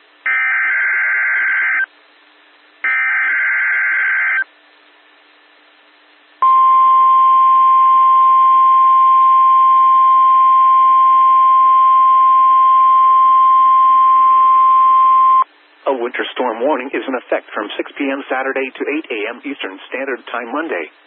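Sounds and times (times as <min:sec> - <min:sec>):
loud steady alarm tone: 0:00.3 - 0:01.9, 0:02.8 - 0:04.5
faint radio hiss: 0:15.4 - 0:21.0.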